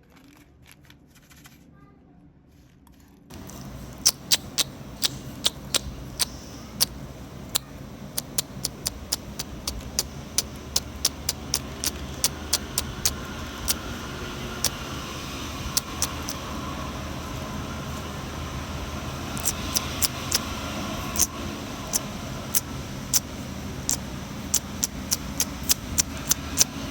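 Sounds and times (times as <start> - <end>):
sharp pops and crackles: 3.3 - 14.0, 19.4 - 20.5, 23.9 - 26.8
steady hiss: 3.3 - 26.9.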